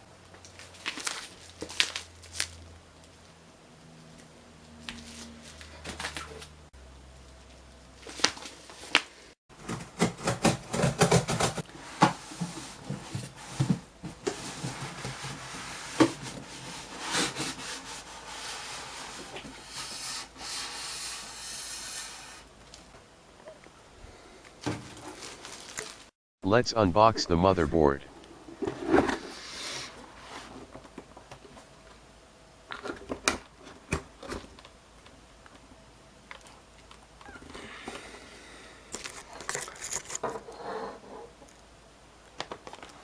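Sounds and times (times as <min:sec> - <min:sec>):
cardboard and plastic rubbing: 0:09.6 - 0:22.4.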